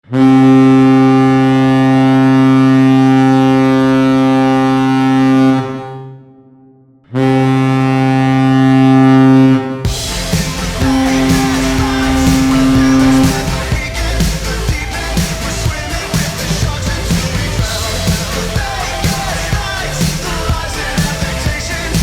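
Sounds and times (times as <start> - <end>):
deep goal horn blasts: 0.0 - 6.3, 7.2 - 16.0
arena music: 9.8 - 22.0.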